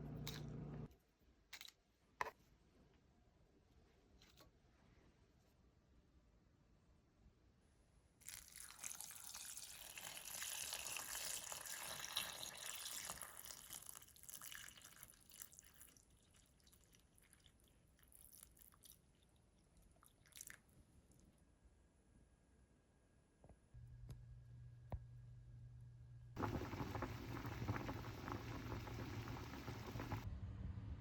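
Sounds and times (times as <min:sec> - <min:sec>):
water pouring into a pot: 0:08.2 - 0:19.0, 0:26.4 - 0:30.3
water drips: 0:26.4 - 0:30.2.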